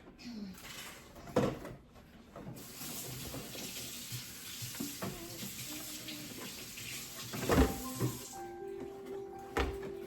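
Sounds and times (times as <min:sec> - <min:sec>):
water running from tap: 0:02.6 - 0:08.4.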